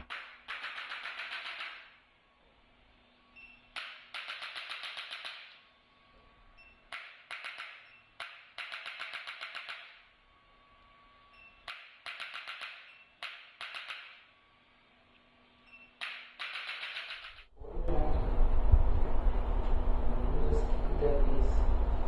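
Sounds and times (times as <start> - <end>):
rapid mechanical clicking: 6.9 - 10.0.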